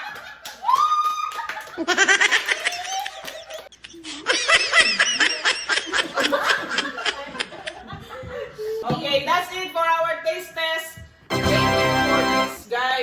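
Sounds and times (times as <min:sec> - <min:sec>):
people laughing hard: 0:01.4 - 0:08.8.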